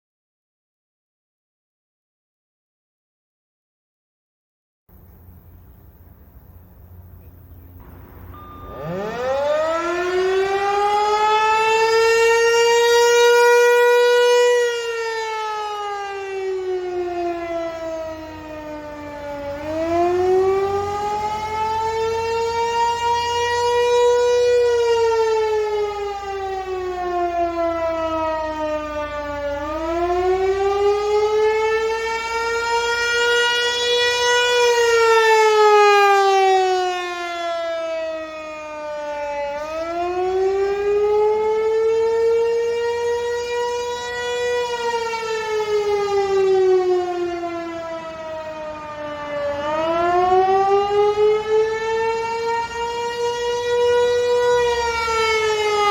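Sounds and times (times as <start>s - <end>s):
warning siren wailing: 4.9s - 55.9s.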